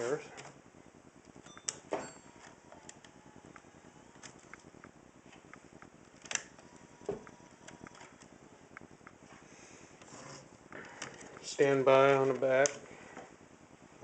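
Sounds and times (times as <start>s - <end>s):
camcorder handling clicks: 6.2s - 6.6s.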